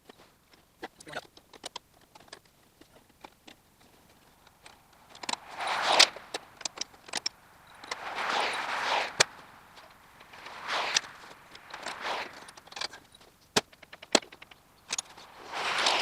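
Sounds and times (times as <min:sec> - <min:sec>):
rushing noise: 0:04.4 - 0:13.0, 0:14.8 - 0:16.0.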